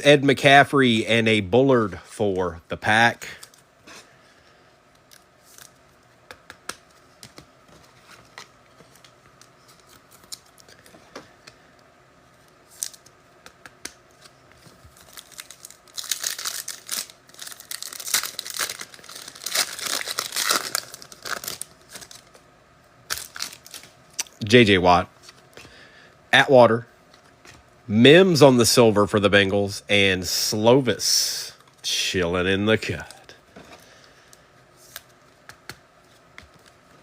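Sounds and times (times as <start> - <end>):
cards clicking and tapping: 6.3 - 7.8, 13.4 - 14.0
foil wrapper tearing and crinkling: 14.9 - 22.3, 23.1 - 23.9.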